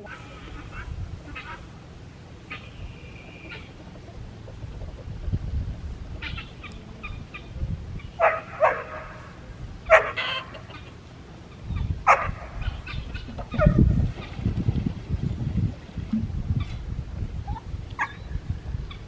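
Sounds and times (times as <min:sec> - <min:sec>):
loud chicken calls: 0:00.0 - 0:05.1, 0:06.0 - 0:13.8
chickens clucking: 0:00.0 - 0:16.8
low rumble: 0:10.6 - 0:19.0.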